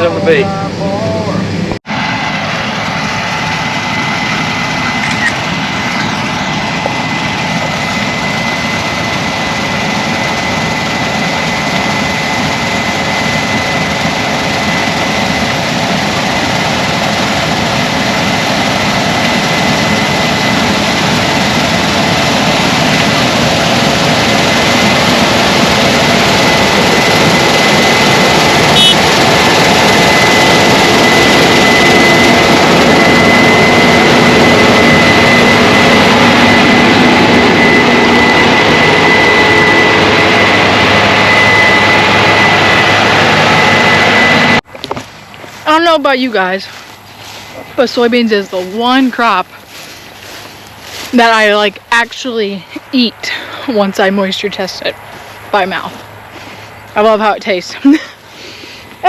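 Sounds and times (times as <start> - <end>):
farm machinery engine drone: 0.0 - 59.0
thin steady whine: 0.0 - 59.0.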